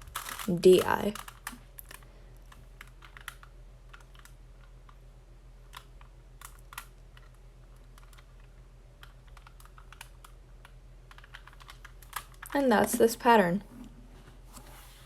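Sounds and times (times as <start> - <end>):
puzzle cube plastic clicks: 0.0 - 5.0, 5.6 - 12.6
steady low hum: 0.0 - 15.0.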